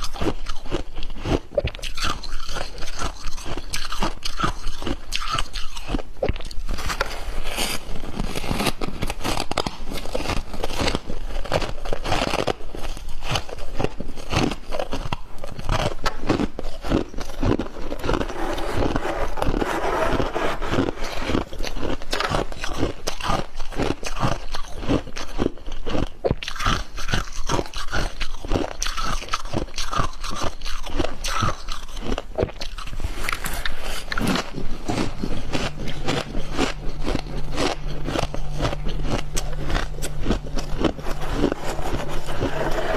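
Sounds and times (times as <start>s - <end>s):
crunching and chewing frost: 0.0s - 42.9s
faint low hum: 26.9s - 42.9s.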